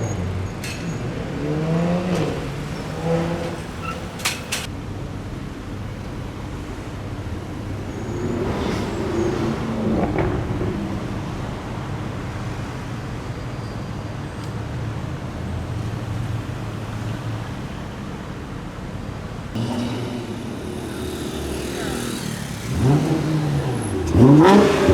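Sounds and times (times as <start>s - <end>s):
car engine running: 1.0s - 4.7s, 19.6s - 24.9s.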